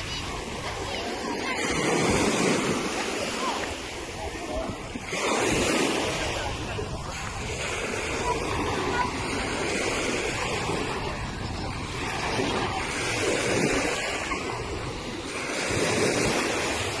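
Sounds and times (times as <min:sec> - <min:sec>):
waves washing onto shore: 0:00.0 - 0:17.0
wind on microphone: 0:00.0 - 0:17.0.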